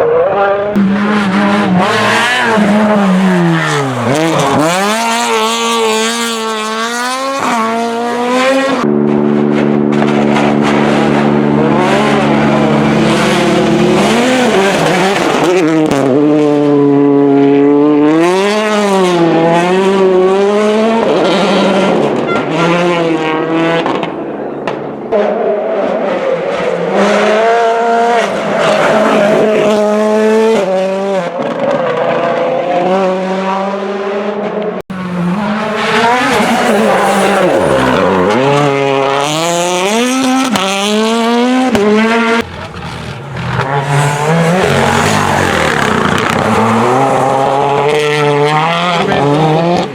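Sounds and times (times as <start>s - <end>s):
rally car engines revving: 0.0s - 49.9s.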